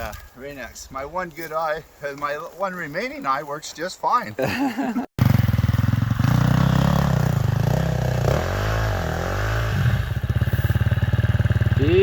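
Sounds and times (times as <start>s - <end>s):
dirt bike engine revving: 5.2s - 12.0s.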